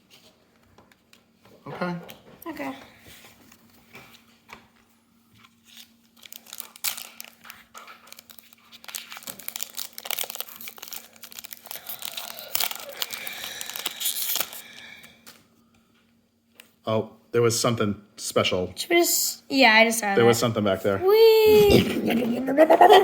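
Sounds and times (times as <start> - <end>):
foil wrappers crinkling and tearing: 5.4 - 15.4.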